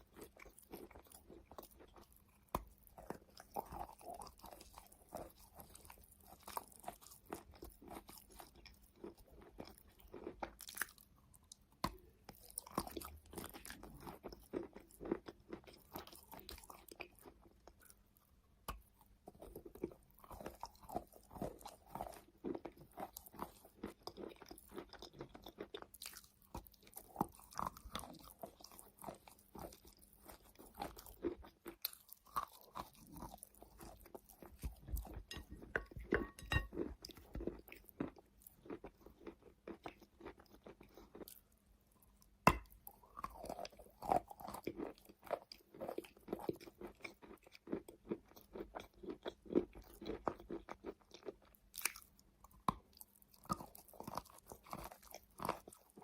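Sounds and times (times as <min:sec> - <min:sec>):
chewing chalk crunches: 0:18.7 - 0:56.0.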